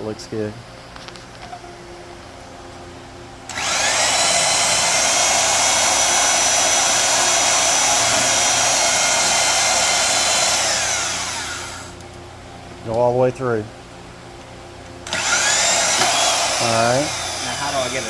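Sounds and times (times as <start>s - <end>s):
power saw cutting metal: 3.5s - 12.0s, 15.1s - 18.0s.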